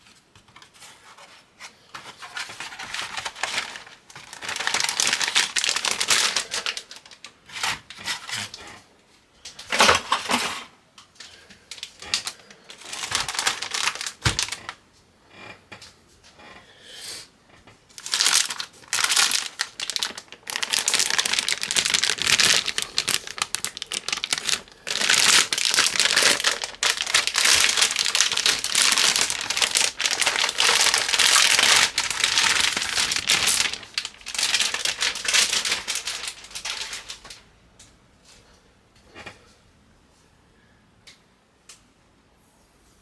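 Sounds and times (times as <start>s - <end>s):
packaging crinkling: 2.6s - 7.4s, 11.7s - 14.8s, 17.9s - 37.4s.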